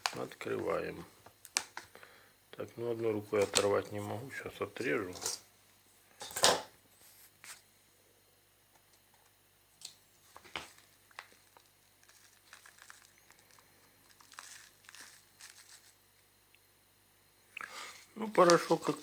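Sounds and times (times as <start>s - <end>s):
plastic pack crinkling: 3.4s - 4.0s, 10.2s - 16.2s, 17.9s - 19.0s.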